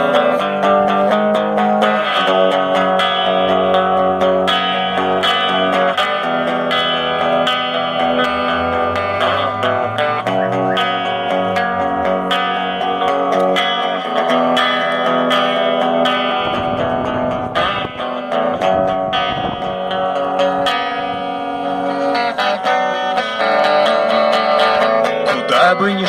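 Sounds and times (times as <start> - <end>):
guitar picked and strummed chords: 0.0 - 26.0.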